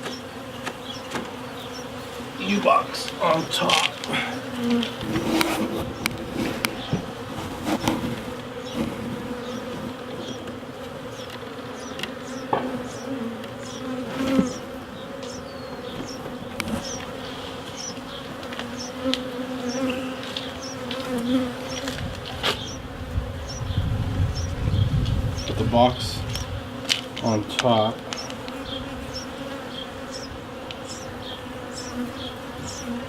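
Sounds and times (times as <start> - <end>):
wooden hive boxes knocking: 0.0 - 22.8
bees buzzing: 0.0 - 33.0.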